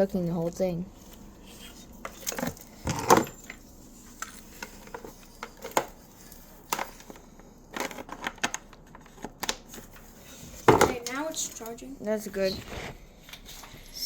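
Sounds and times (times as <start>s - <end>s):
hard parts clicking and knocking: 10.7s - 11.2s.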